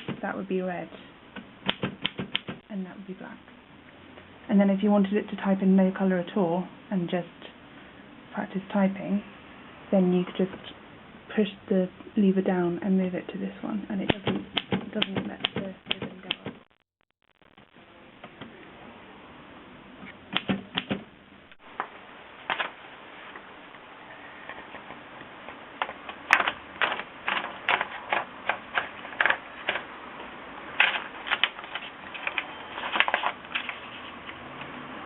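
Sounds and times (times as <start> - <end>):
typewriter keystrokes: 1.6 - 2.6.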